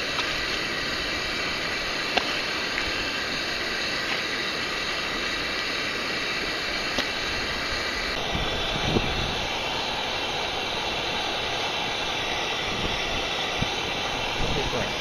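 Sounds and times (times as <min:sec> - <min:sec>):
stream water flowing: 0:00.0 - 0:15.0.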